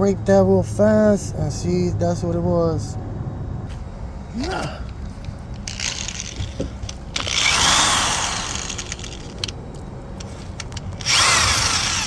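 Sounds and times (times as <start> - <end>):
power tool whining against metal: 5.6 - 9.5, 10.7 - 12.0.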